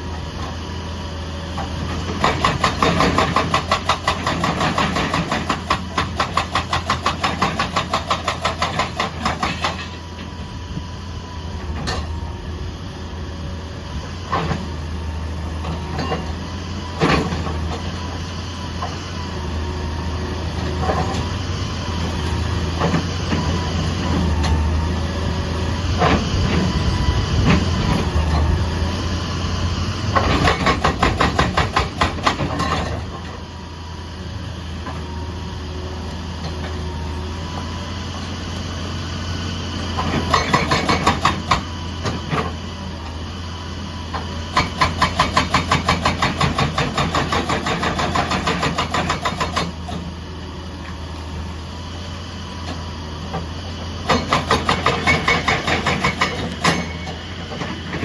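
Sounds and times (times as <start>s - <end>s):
diesel engine running: 0.0s - 58.0s
hydraulic breaker hammering: 2.1s - 10.0s, 30.1s - 33.1s, 40.1s - 42.4s, 44.5s - 49.8s, 54.0s - 58.0s.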